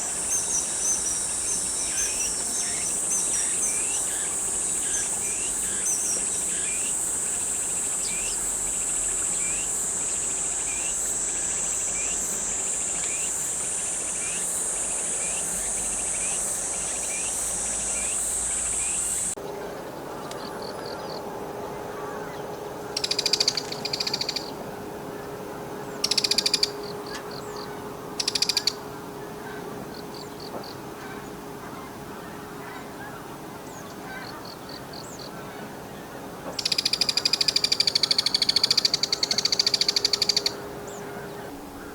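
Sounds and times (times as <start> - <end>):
high-pitched insect drone: 0.1 - 19.4, 23.0 - 24.6, 26.0 - 27.6, 28.2 - 28.8, 36.6 - 40.6.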